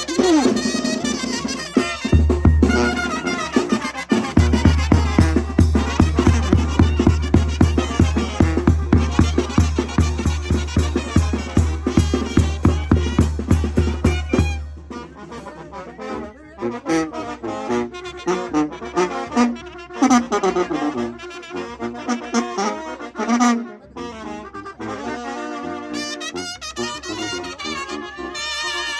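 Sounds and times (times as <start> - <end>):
heavy drum beats: 0.0 - 15.1
brass band melody: 0.0 - 28.9.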